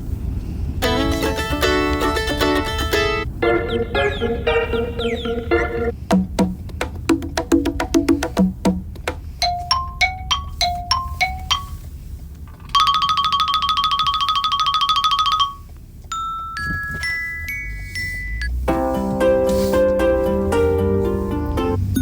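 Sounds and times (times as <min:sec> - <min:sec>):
rising chime notes: 0:09.4 - 0:11.8, 0:16.2 - 0:22.0
tinkling ringtone melody: 0:09.4 - 0:11.9, 0:12.8 - 0:22.0.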